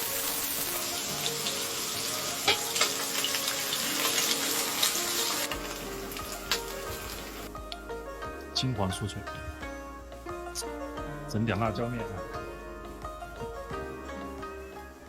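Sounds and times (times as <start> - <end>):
fish deep-frying in oil: 0.0 - 7.5.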